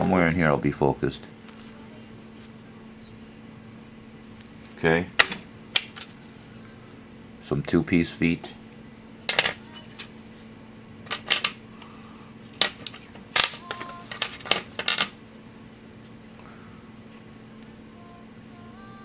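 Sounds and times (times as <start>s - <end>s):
small metal parts clinking: 11.1s - 11.6s, 12.6s - 15.2s.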